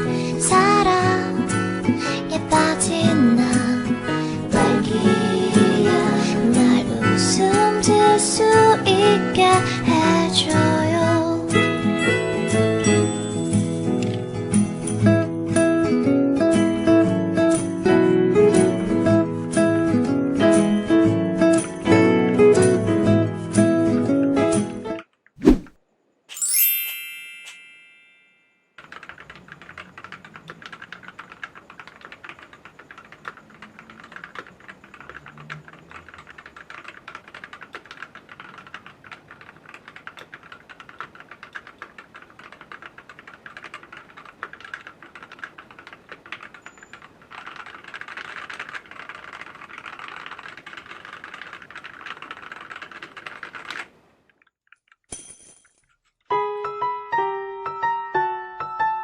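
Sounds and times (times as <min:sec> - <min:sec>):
mechanical keyboard typing: 0:28.8 - 0:53.9.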